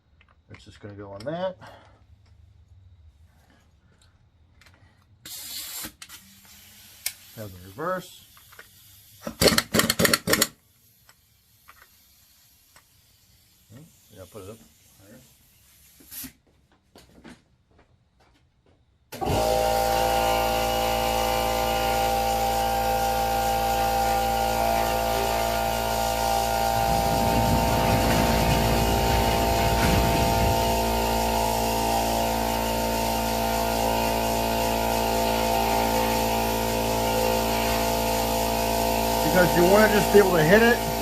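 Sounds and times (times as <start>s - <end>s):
motor humming: 19.2s - 41.0s.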